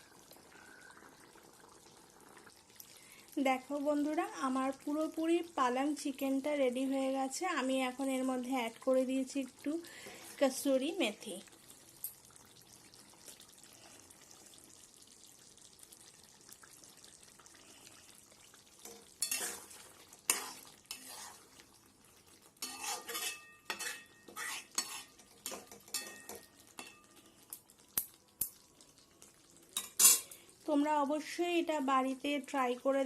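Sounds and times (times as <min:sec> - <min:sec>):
curry sizzling in a pan: 0:00.0 - 0:33.0
utensil stirring and scraping pan: 0:18.8 - 0:21.7, 0:22.5 - 0:27.1.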